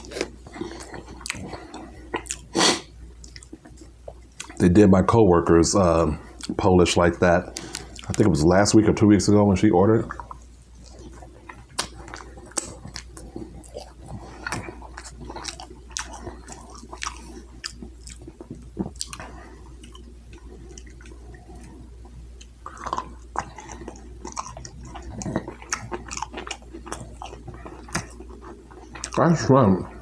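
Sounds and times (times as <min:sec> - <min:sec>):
person chewing shrimp: 0:00.0 - 0:04.6, 0:06.2 - 0:06.6, 0:07.4 - 0:08.4, 0:10.0 - 0:30.0
steady low hum: 0:00.0 - 0:30.0
wet mouth clicks and smacks: 0:10.2 - 0:13.2.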